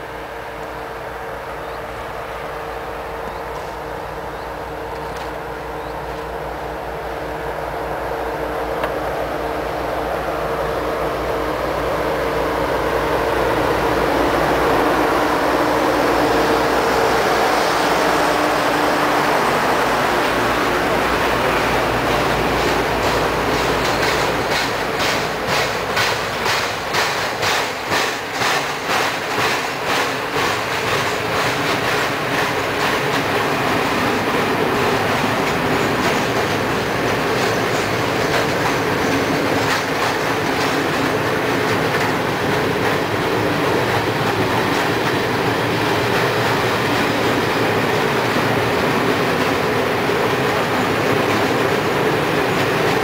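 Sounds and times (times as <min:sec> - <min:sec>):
train rolling rumble: 0:00.0 - 0:53.0
train wheels clattering over rail joints: 0:17.2 - 0:53.0.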